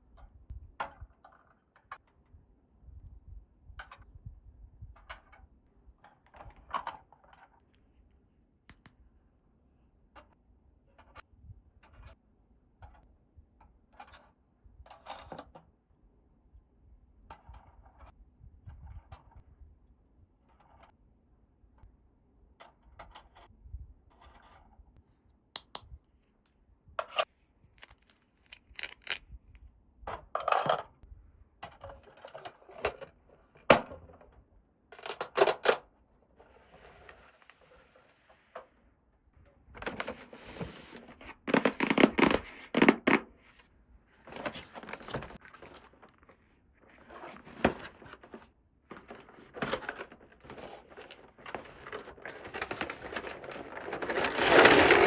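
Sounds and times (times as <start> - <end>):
rustling and scraping: 35.0 - 38.8, 39.6 - 55.0.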